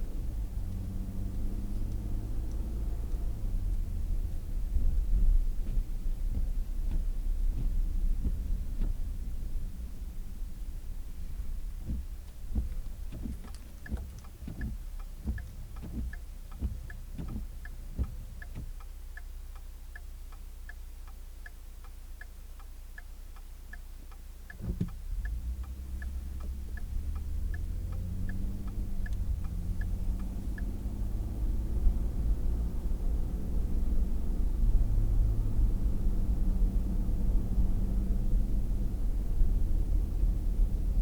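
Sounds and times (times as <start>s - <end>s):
car engine: 0.0s - 41.0s
road rumble: 0.0s - 41.0s
turn-signal ticking: 11.8s - 30.8s.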